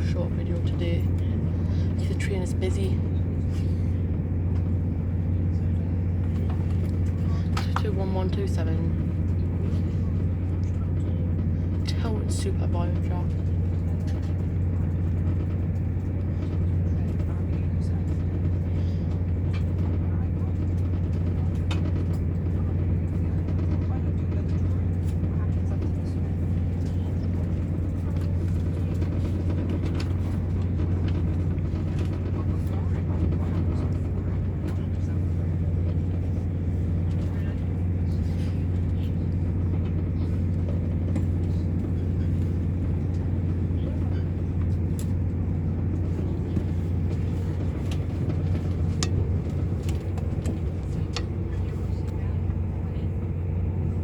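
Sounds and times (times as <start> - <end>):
train diesel engine drone: 0.0 - 54.0.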